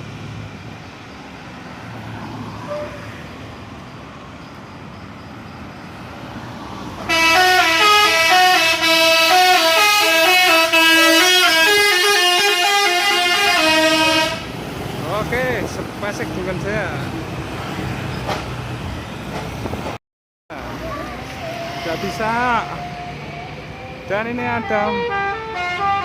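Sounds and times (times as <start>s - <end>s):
engines and road noise rumble: 0.0s - 26.0s
musical air horn melody: 7.1s - 14.5s, 24.5s - 26.0s.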